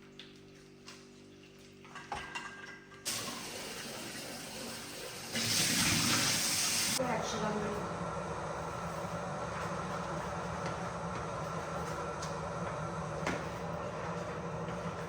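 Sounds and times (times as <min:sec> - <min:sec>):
tap water running: 0:03.0 - 0:15.0.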